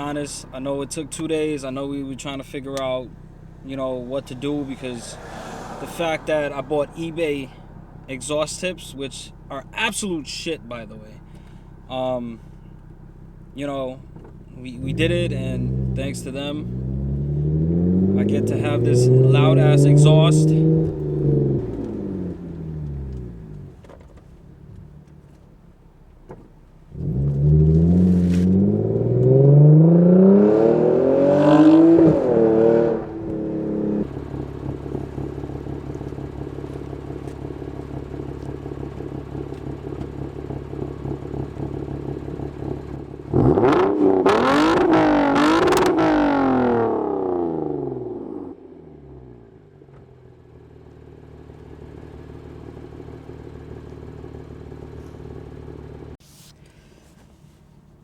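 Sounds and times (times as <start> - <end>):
loud car engine revving: 0.0 - 8.6, 14.6 - 23.7, 26.9 - 49.4.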